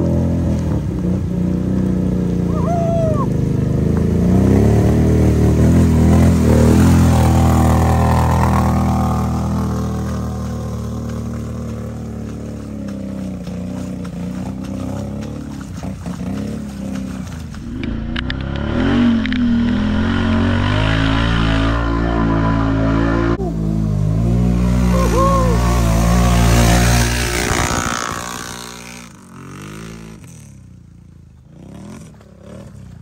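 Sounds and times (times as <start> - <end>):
atv engine running: 0.0 - 33.0.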